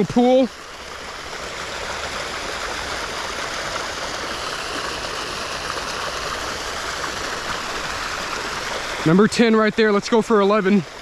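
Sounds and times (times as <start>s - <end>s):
creek water flowing over rocks: 0.0s - 11.0s.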